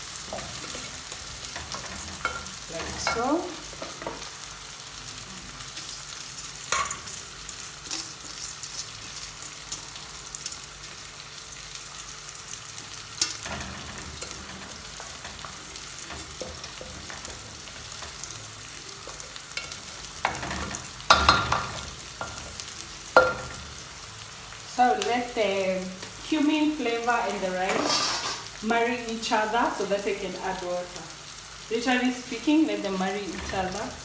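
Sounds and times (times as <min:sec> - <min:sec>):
rice sizzling in oil: 0:00.0 - 0:34.0
utensil scraping and knocking pan: 0:13.2 - 0:18.4, 0:27.7 - 0:28.5.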